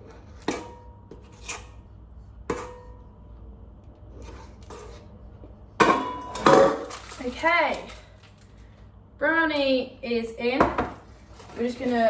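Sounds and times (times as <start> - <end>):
utensil scraping bowl: 0.0 - 1.8.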